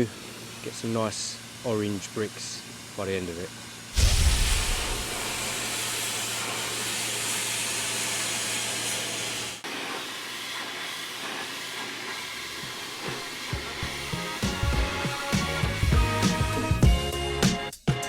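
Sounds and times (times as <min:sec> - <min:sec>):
low machine hum: 0:04.0 - 0:06.0
steam cleaner hissing: 0:04.0 - 0:16.9.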